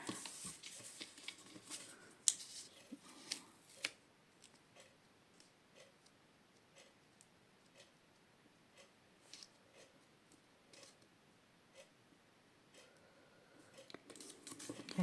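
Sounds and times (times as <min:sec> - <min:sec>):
paper rustling: 0:00.0 - 0:04.0.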